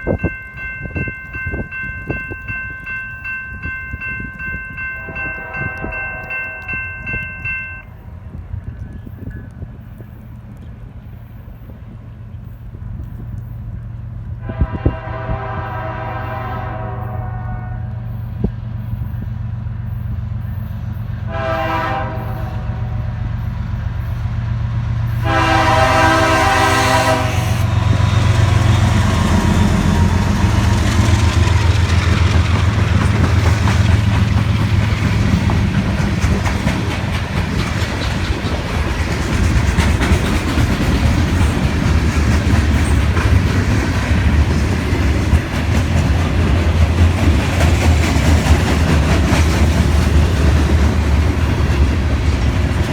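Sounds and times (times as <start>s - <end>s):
locomotive air horn: 5.0s - 7.1s, 14.4s - 18.2s, 21.2s - 23.4s, 25.2s - 31.0s
locomotive engine running: 22.2s - 52.9s
train wheels clacking on rails: 23.3s - 52.9s.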